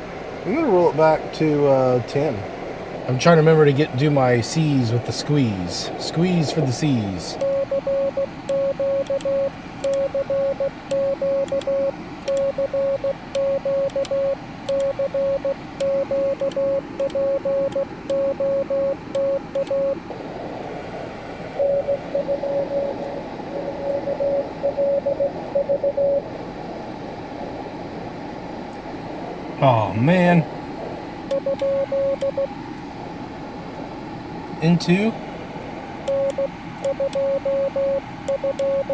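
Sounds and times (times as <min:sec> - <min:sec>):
receiver hiss: 0:00.0 - 0:38.9
morse code tone: 0:07.3 - 0:20.0, 0:21.6 - 0:26.2, 0:31.3 - 0:32.5, 0:36.1 - 0:38.9.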